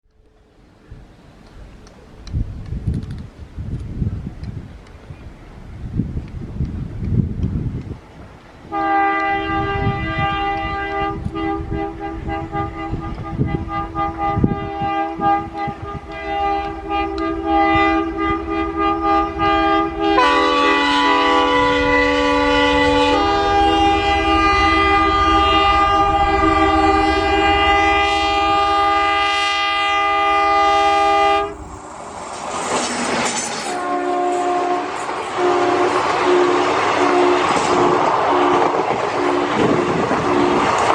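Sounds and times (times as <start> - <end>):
train rumbling past: 0.2 - 40.9
locomotive horn: 8.7 - 31.8, 33.2 - 40.9
short horn toots: 8.7 - 31.8, 33.4 - 38.6.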